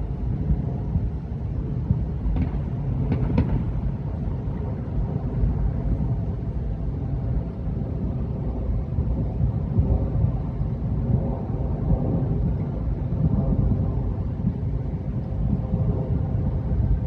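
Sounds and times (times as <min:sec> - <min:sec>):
distant fireworks rumbling: 0:00.0 - 0:17.0
firework pops: 0:01.9 - 0:03.8.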